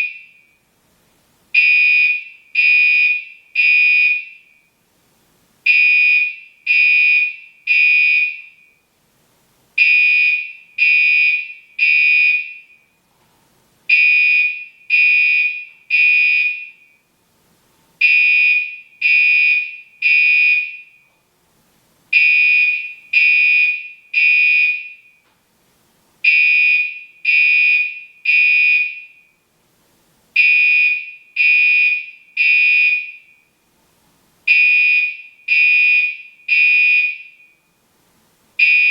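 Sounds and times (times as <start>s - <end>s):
fire alarm horn blasts: 0.0s - 0.6s, 1.6s - 4.7s, 5.7s - 8.8s, 9.8s - 13.0s, 13.9s - 17.1s, 18.0s - 21.1s, 22.1s - 25.2s, 26.2s - 29.4s, 30.4s - 33.6s, 34.5s - 37.8s, 38.6s - 38.9s.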